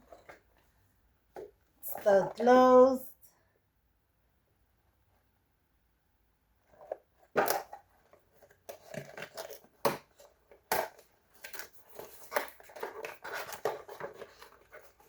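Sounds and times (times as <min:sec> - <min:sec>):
packaging tearing and crinkling: 0:08.7 - 0:15.0.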